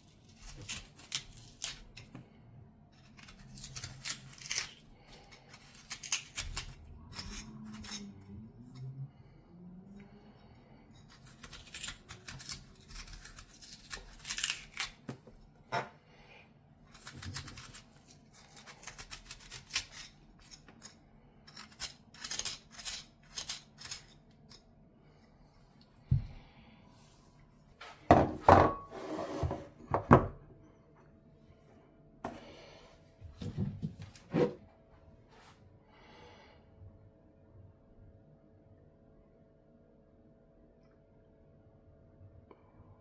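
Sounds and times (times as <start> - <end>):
utensil scraping radish: 0.0 - 2.2, 2.9 - 8.9, 10.8 - 15.1, 16.9 - 24.7.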